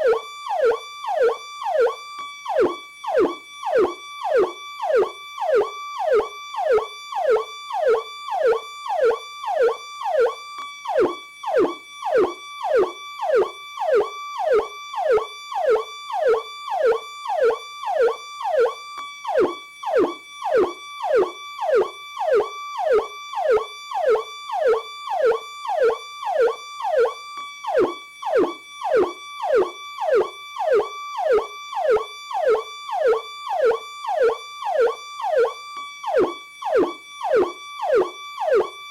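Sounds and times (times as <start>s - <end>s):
electronic police siren: 0.0s - 38.9s.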